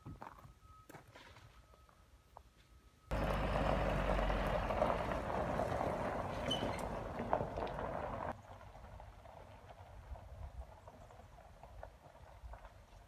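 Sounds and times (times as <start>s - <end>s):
engine running: 3.1s - 8.4s.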